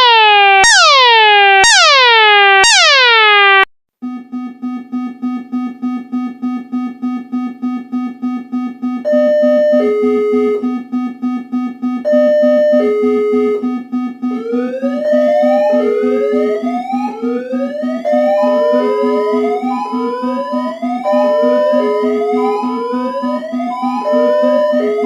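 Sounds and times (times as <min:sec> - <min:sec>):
low pulsing alarm tone: 0:00.0 - 0:05.2, 0:09.0 - 0:25.0
rising electronic sweeps: 0:14.3 - 0:25.0.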